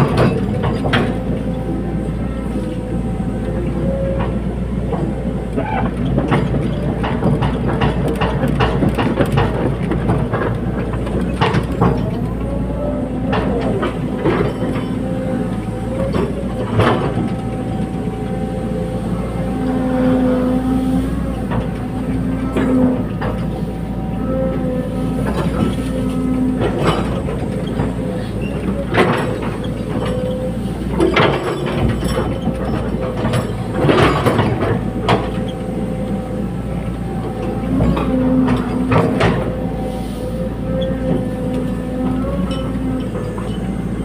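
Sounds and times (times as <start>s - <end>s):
metal clanks and knocks: 0.0s - 1.5s, 4.1s - 12.6s, 13.2s - 18.2s, 21.3s - 36.2s, 37.0s - 39.8s
diesel engine droning: 0.0s - 44.0s.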